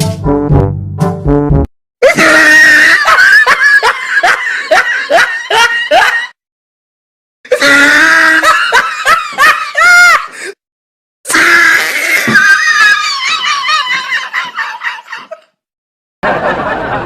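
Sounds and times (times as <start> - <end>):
rapid ha-ha laughter: 2.0 - 6.4, 12.2 - 15.5, 16.2 - 17.0.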